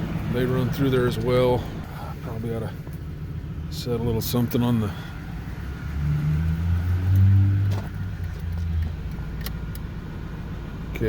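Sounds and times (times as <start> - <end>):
pickup engine idling: 0.0 - 5.6.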